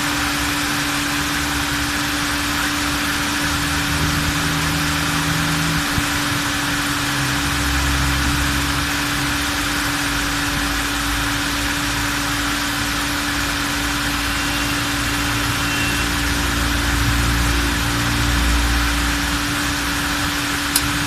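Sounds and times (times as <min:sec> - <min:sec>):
car engine idling: 0:00.0 - 0:21.0
radiator cooling fan whooshing: 0:00.0 - 0:21.0.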